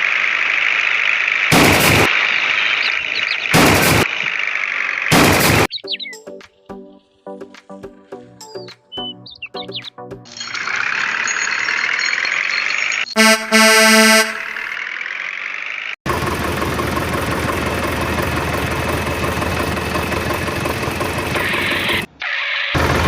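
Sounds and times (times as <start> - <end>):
motor vehicle engine running: 0.0 - 5.7, 10.6 - 22.1, 22.8 - 23.0
vehicle horn honking: 13.2 - 14.7.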